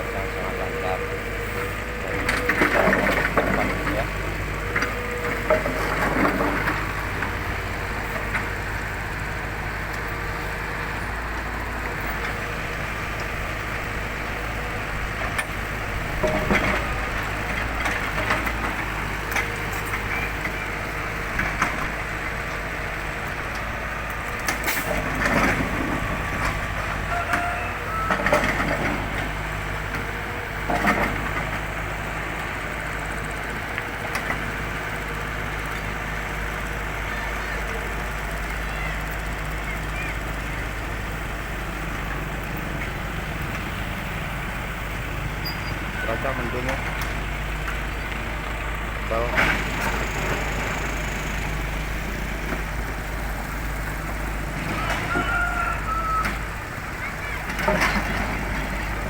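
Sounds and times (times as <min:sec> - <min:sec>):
construction machinery engine drone: 0:00.0 - 0:59.0.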